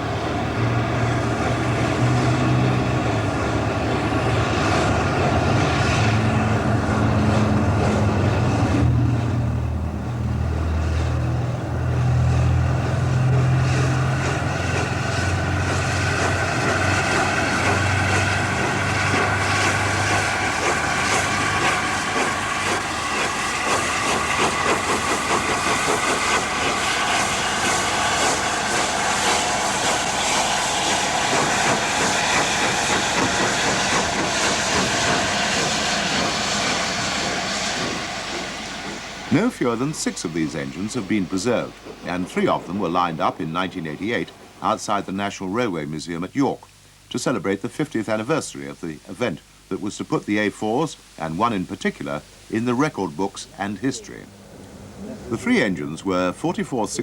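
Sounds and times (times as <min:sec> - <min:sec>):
locomotive exhaust beats: 0:00.0 - 0:57.0
steam hissing: 0:00.0 - 0:57.0
steam locomotive rumble: 0:00.0 - 0:57.0.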